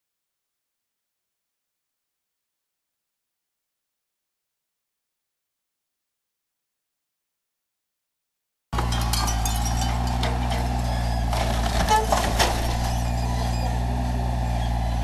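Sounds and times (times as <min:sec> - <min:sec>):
heavy diesel machinery running: 0:08.8 - 0:15.0.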